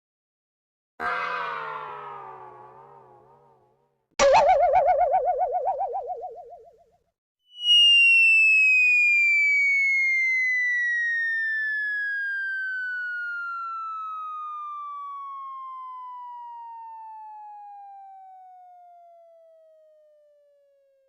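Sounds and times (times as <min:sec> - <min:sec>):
synthetic whistle tone sliding down: 0:04.2 - 0:06.8, 0:07.5 - 0:14.7.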